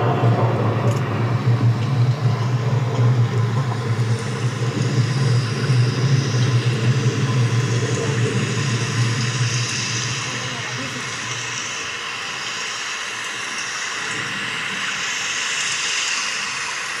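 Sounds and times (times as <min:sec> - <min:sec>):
low storm rumble over loudspeakers: 0:00.0 - 0:11.7
hissing rain-like wash: 0:00.0 - 0:17.0.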